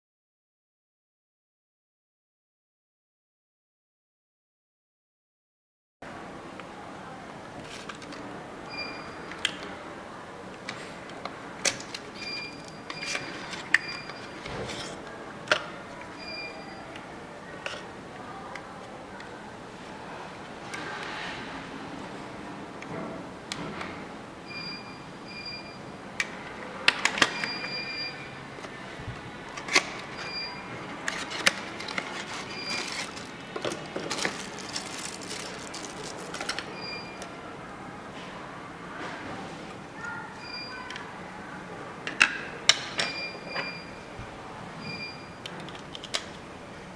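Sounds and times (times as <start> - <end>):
high-pitched key beeps: 27.3 - 28.4.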